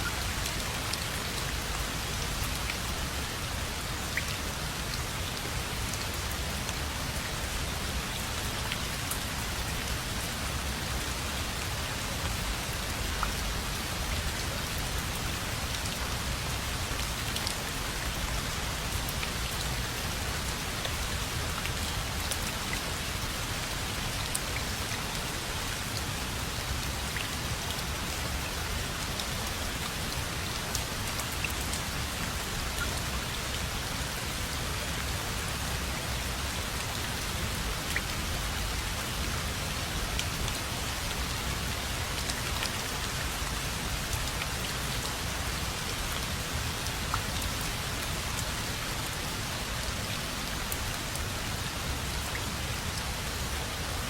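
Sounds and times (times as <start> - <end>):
steady rain hiss: 0.0 - 54.0.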